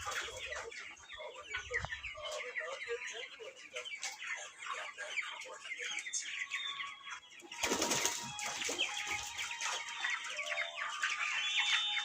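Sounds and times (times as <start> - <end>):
chickens clucking: 0.0 - 12.0
wings flapping: 7.6 - 8.8.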